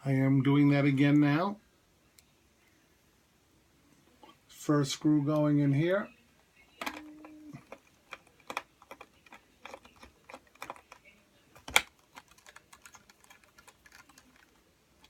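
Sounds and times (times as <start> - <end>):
screwdriver and plastic parts clicking: 6.8 - 11.0, 11.6 - 14.6.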